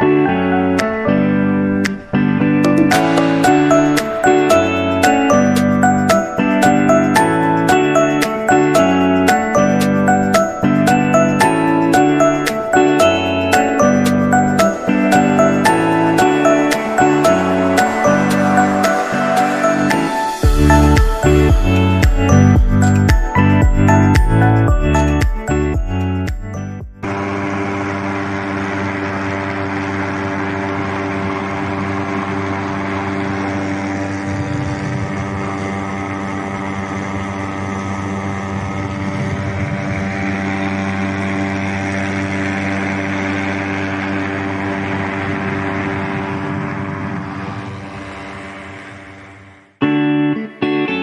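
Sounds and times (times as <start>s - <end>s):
ultralight aircraft engine and propeller: 0.0s - 26.2s, 27.0s - 49.8s
wind rushing: 34.2s - 36.8s, 38.4s - 41.2s, 45.2s - 49.7s.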